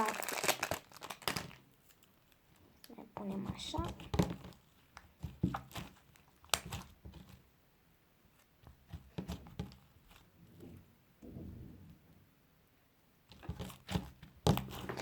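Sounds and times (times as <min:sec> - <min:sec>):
slime crackling and popping: 0:00.0 - 0:07.0.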